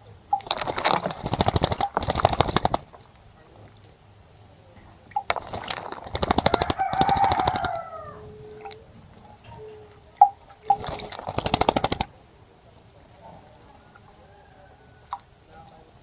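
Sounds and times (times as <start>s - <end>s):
bird splashing in water: 0.3s - 3.4s, 5.1s - 9.2s, 10.1s - 12.2s
bird call falling in pitch: 6.6s - 10.0s.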